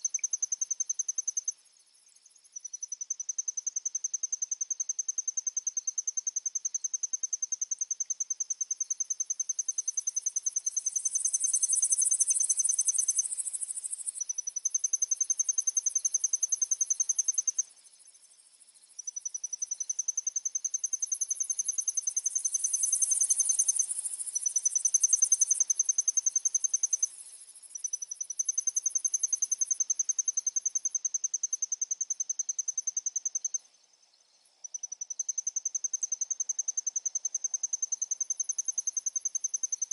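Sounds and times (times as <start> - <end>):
insect pulsed trill: 0.0 - 39.9
high hazy insect buzz: 10.2 - 27.9.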